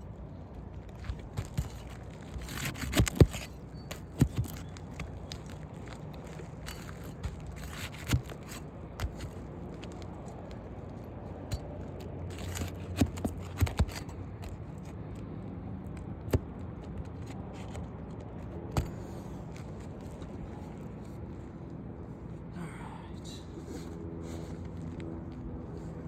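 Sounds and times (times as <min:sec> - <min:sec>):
scraping on a roof: 0:00.0 - 0:15.1
sharp knocks and clicks: 0:11.4 - 0:15.0.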